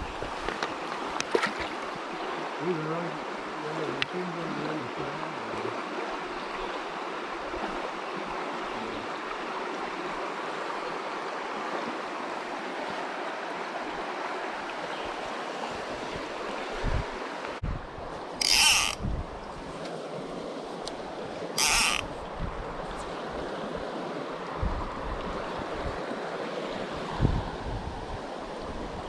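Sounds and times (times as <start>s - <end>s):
stream water rushing: 0.0s - 29.0s.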